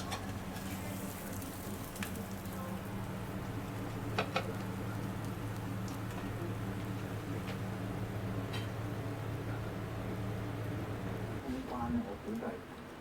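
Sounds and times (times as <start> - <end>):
pancake sizzling in oil: 0.0 - 9.2
low steady hum: 0.0 - 13.0.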